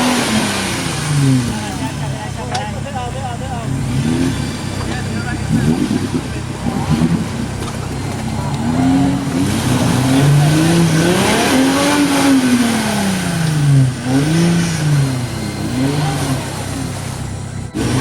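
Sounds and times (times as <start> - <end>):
vehicle engine revving: 0.0 - 18.0.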